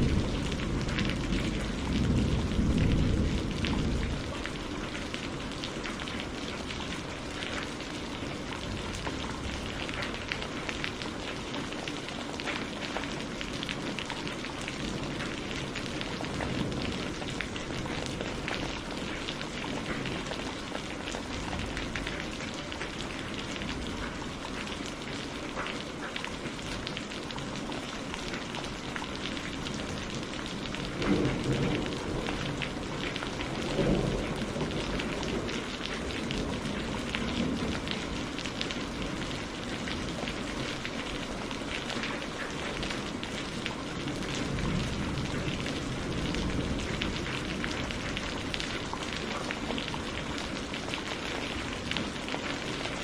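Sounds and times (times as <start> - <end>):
low thunder rolls: 0.0 - 7.2, 30.7 - 38.2
rain pattering: 0.0 - 53.0.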